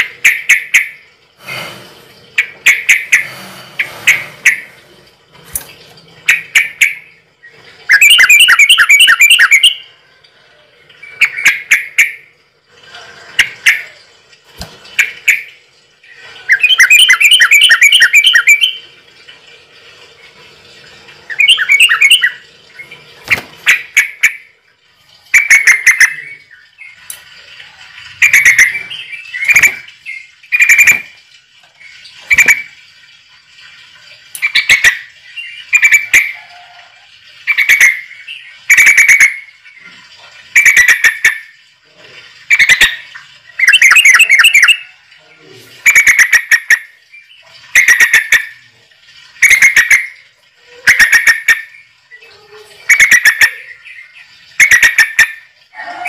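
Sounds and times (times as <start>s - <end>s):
bird chirping and trilling: 0.0s - 1.1s, 2.4s - 4.8s, 6.2s - 10.0s, 10.9s - 12.4s, 15.0s - 18.9s, 21.3s - 24.5s, 25.3s - 27.1s, 28.1s - 31.2s, 31.8s - 32.8s, 34.4s - 36.7s, 37.4s - 40.0s, 40.6s - 41.5s, 42.5s - 45.0s, 45.8s - 48.6s, 49.4s - 56.0s.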